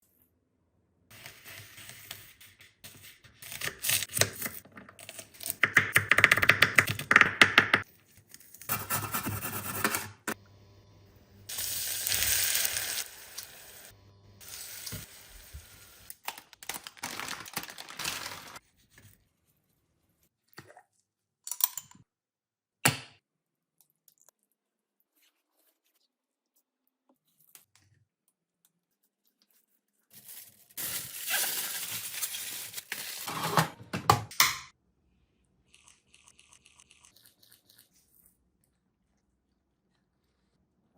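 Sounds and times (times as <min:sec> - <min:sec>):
food crackling and rustling: 0:11.5 - 0:18.6, 0:28.9 - 0:33.3.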